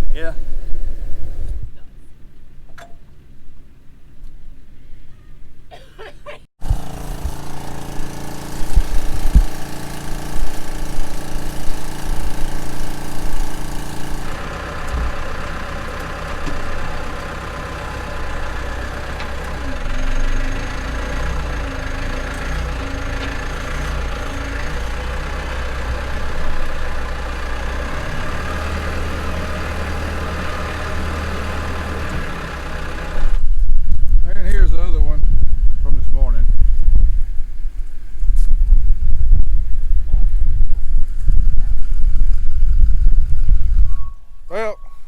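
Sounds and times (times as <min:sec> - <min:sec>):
farm machinery engine running: 0:06.6 - 0:34.1.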